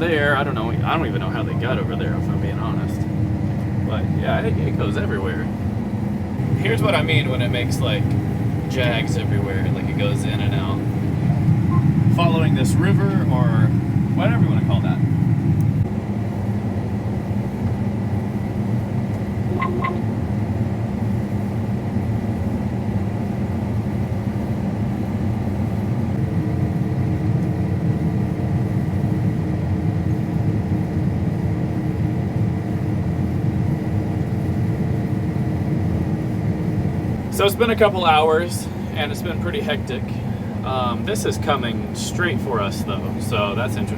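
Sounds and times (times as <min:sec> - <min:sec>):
combine harvester engine drone: 0:00.0 - 0:43.9
higher hum: 0:19.3 - 0:20.4
brief chirp: 0:19.5 - 0:20.1.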